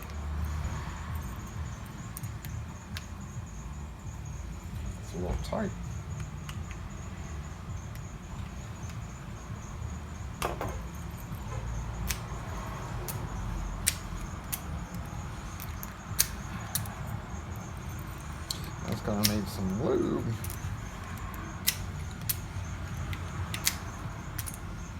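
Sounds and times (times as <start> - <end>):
steady low hum: 0.0 - 24.9
metal lock clicks and scraping: 10.4 - 24.8.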